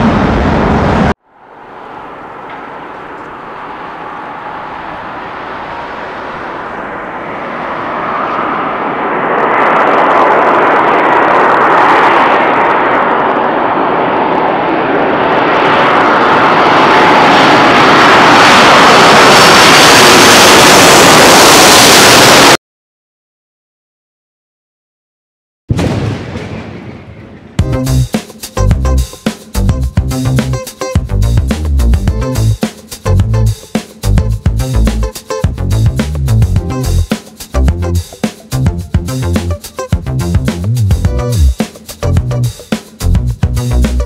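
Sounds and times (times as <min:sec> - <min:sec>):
jet engines roaring: 0:00.0 - 0:22.6.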